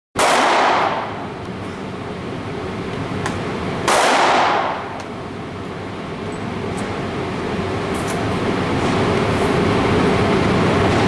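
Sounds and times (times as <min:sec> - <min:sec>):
loud gunshot ringing indoors: 0:00.2 - 0:01.2, 0:03.8 - 0:05.0
steady background rumble: 0:00.2 - 0:11.0.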